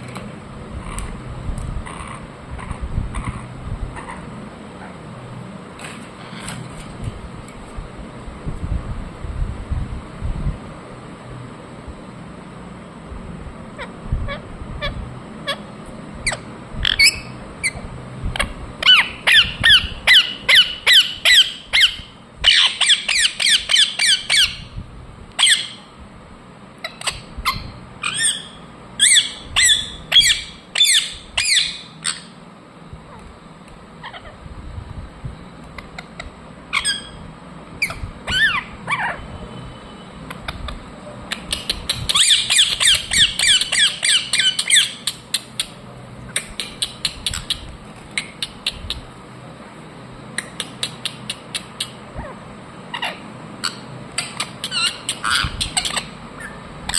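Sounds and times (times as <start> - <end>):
parrot squawking: 1.8 - 5.0, 13.8 - 17.8, 18.4 - 24.7, 25.4 - 25.9, 26.8 - 32.4, 34.0 - 34.4, 36.0 - 37.2, 37.8 - 39.3, 41.4 - 49.0, 50.4 - 56.9.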